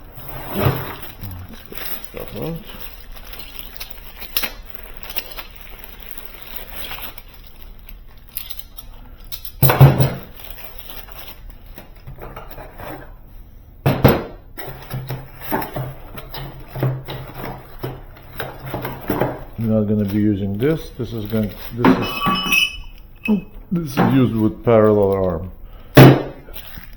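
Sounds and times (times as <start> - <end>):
packaging rustling: 0.0 - 9.4, 10.2 - 13.2, 14.6 - 26.9
small metal parts clinking: 8.1 - 9.8, 21.2 - 23.4.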